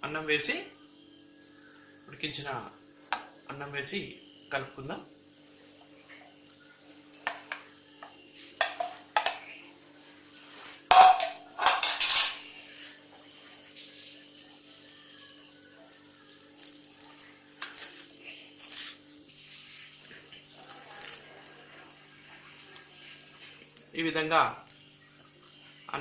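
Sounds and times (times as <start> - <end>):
spoon scraping a frying pan: 7.2 - 9.5, 10.4 - 12.9, 17.6 - 21.2.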